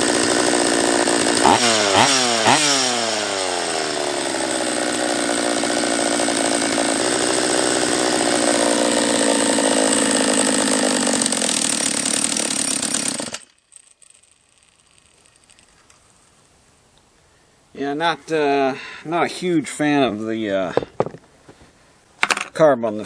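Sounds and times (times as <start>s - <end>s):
chainsaw engine running: 0.0s - 15.6s.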